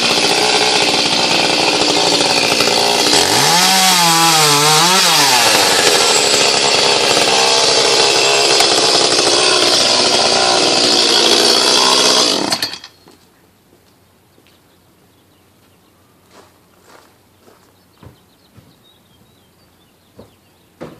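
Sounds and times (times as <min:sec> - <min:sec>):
chainsaw running at high speed: 0:00.0 - 0:12.9.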